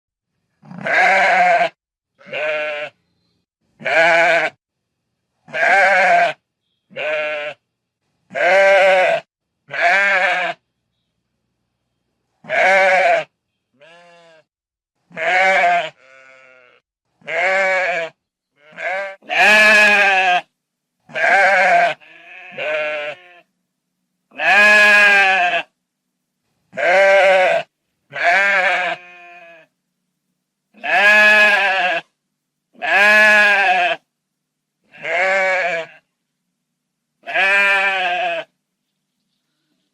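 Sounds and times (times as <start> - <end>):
sheep bleating: 0.6 - 3.0, 3.8 - 4.6, 5.5 - 7.6, 8.3 - 10.6, 12.4 - 14.5, 15.1 - 20.5, 21.1 - 23.5, 24.3 - 25.7, 26.7 - 29.7, 30.8 - 32.1, 32.8 - 34.0, 34.9 - 36.1, 37.2 - 38.5.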